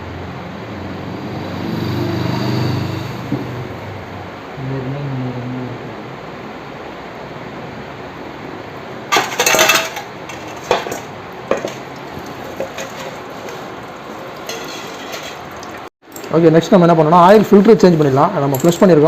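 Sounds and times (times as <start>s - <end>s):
workshop background noise: 2.2s - 4.3s, 8.0s - 19.0s
metal tools clinking: 9.1s - 13.7s, 14.4s - 16.6s, 18.4s - 19.0s.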